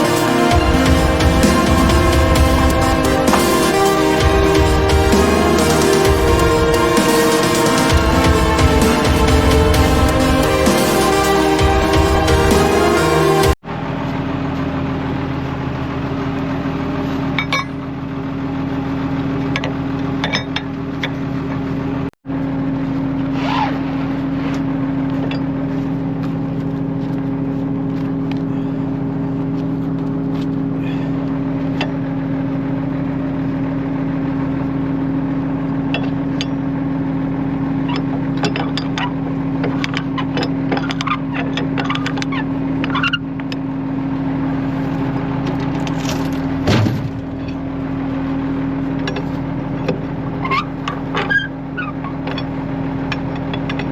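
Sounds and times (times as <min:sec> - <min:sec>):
log loader engine running: 0:00.0 - 0:23.3, 0:23.9 - 0:53.9
knocks and clunks: 0:46.0 - 0:47.6.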